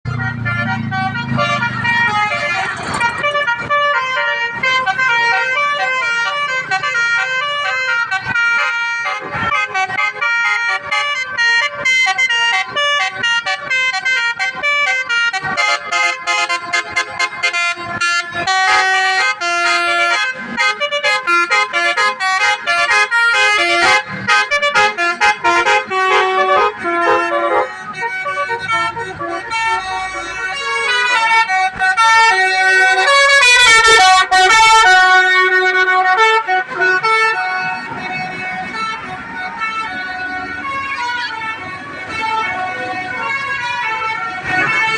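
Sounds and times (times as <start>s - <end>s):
bus musical horn tooting: 0.1s - 44.9s.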